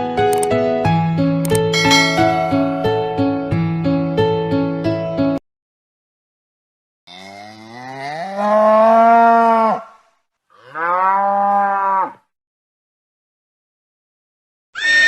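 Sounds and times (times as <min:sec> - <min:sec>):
cow mooing: 0:07.1 - 0:10.0, 0:10.6 - 0:12.3.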